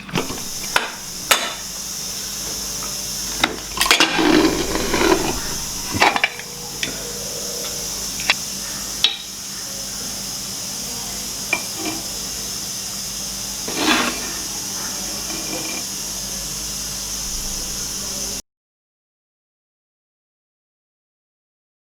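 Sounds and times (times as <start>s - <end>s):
steady high hiss: 0.0s - 18.4s
rustling scrape: 3.8s - 8.4s, 13.6s - 14.5s, 15.1s - 15.8s.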